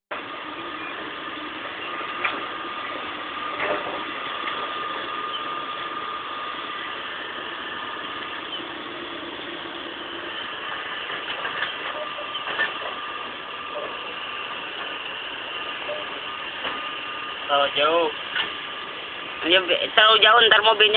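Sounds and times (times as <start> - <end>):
diesel engine idling: 0.1 - 20.9
steady whine: 0.1 - 20.9
metal knocks and clanks: 3.6 - 4.7, 11.0 - 13.0.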